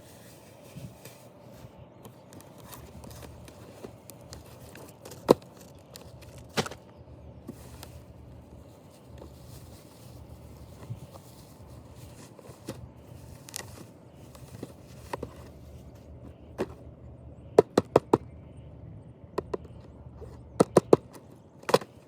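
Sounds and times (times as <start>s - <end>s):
packaging rustling: 0.0s - 16.8s.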